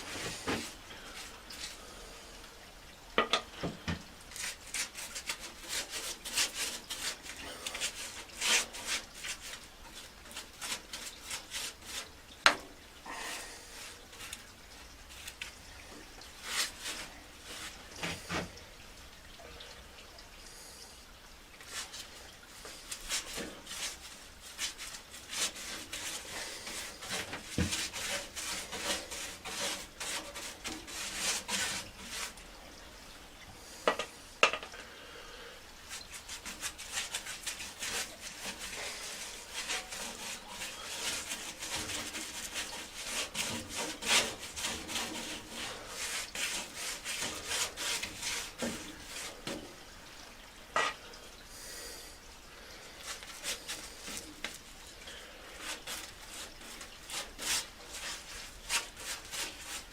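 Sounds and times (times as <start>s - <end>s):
rubbing and scraping strokes: 4.3s - 18.6s, 21.6s - 33.1s, 35.8s - 51.0s, 53.0s - 59.9s.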